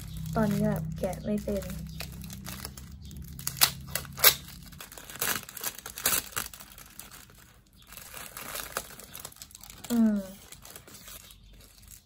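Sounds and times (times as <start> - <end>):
plastic wrapper crinkling and tearing: 0.0 - 12.0.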